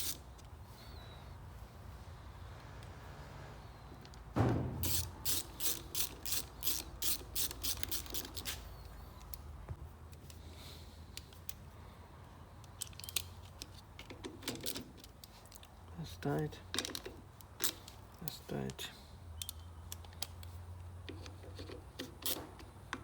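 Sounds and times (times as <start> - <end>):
knock: 4.4 - 5.0
ratchet wrench clicking: 4.8 - 9.4, 21.1 - 22.7.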